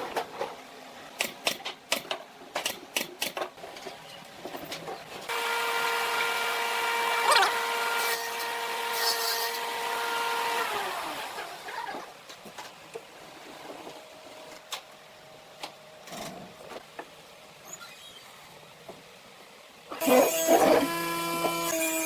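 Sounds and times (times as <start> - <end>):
small electric motor running: 5.3 - 11.4.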